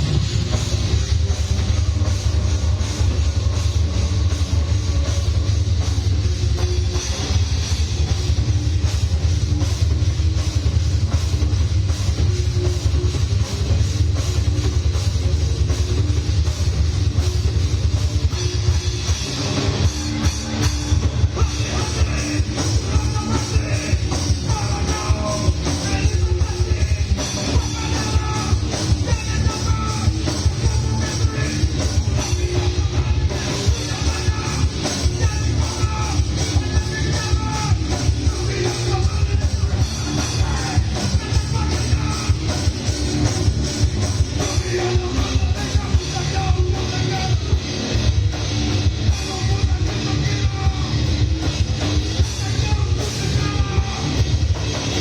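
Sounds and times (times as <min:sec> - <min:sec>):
rock band playing live: 0:00.0 - 0:55.0
singer shouting vocals: 0:20.4 - 0:42.8, 0:44.2 - 0:47.7, 0:49.1 - 0:51.2, 0:52.2 - 0:54.3.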